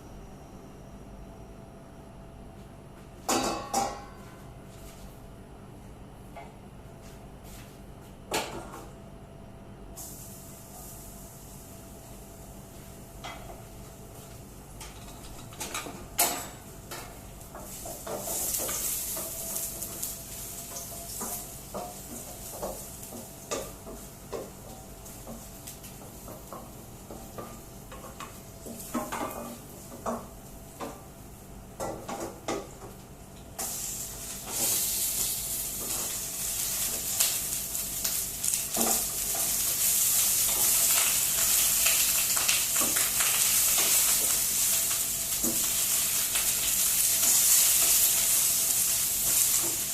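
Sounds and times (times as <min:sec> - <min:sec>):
food sizzling in a pan: 0:10.0 - 0:14.3, 0:16.4 - 0:31.4, 0:33.5 - 0:49.9.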